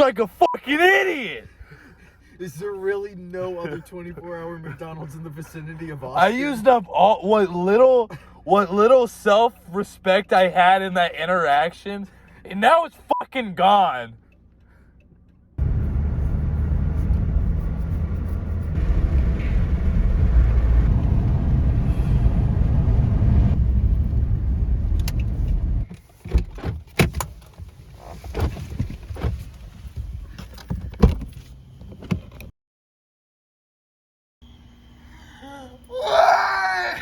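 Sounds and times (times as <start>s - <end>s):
car engine rumble: 14.2s - 32.5s
sharp clicks and knocks: 24.8s - 27.7s.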